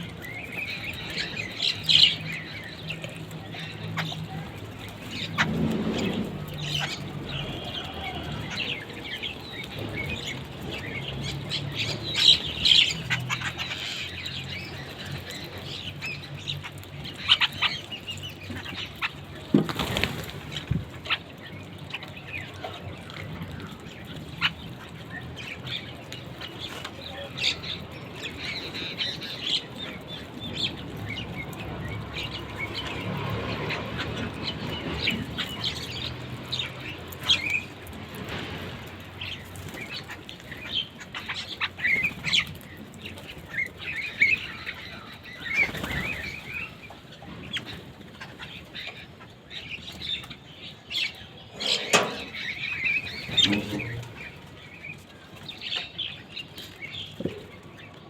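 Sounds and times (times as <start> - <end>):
birds chirping and squawking: 0.0 - 58.0
wings flapping: 17.1 - 21.2, 36.6 - 46.8.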